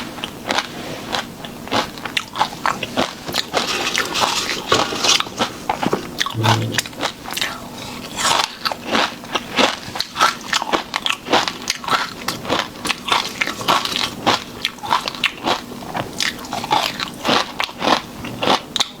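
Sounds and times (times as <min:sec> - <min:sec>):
person chewing shrimp: 0:16.2 - 0:19.0.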